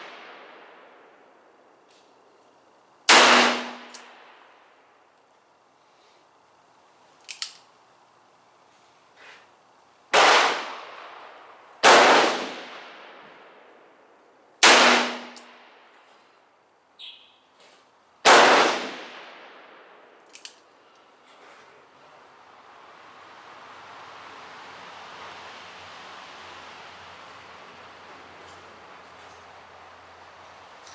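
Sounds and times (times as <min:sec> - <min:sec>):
faint sharp cracks: 0:01.8 - 0:04.5, 0:07.1 - 0:07.7, 0:17.6 - 0:21.8.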